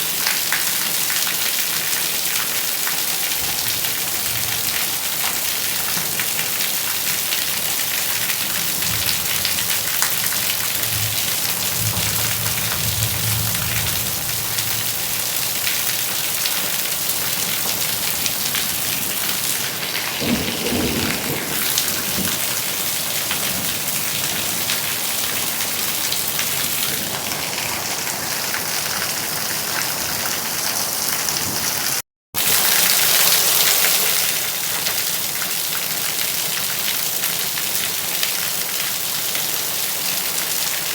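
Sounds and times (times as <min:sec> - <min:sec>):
steady rain falling: 0:00.0 - 0:40.9
rolls of thunder: 0:10.6 - 0:15.3, 0:20.0 - 0:24.8.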